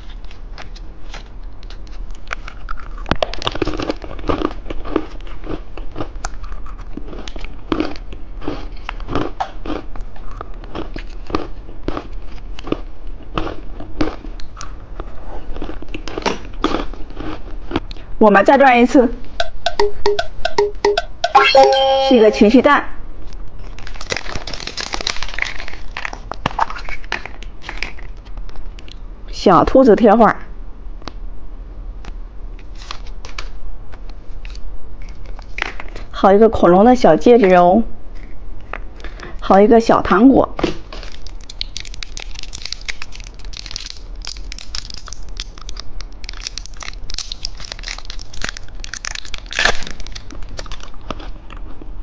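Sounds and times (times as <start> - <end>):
plastic packaging crinkling: 23.6 - 28.2, 40.9 - 51.0.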